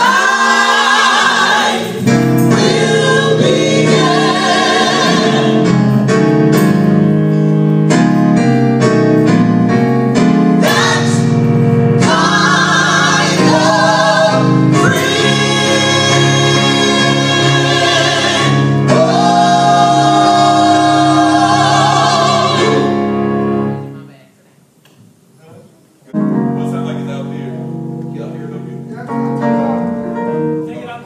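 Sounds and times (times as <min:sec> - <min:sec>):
gospel choir singing: 0:00.0 - 0:06.9, 0:10.1 - 0:23.9.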